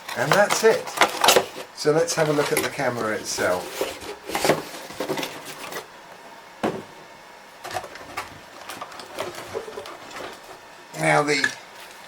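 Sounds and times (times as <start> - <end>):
packaging rustling: 0.0 - 5.9, 7.7 - 10.6.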